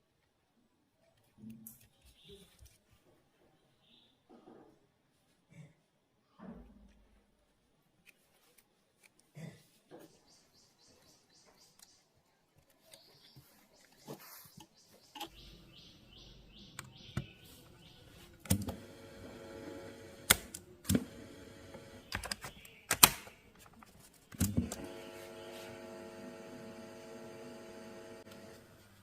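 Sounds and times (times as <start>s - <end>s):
steady hum: 18.0s - 22.1s, 24.4s - 29.0s
sharp mechanical clicks and clunks: 18.4s - 23.7s, 24.3s - 25.1s.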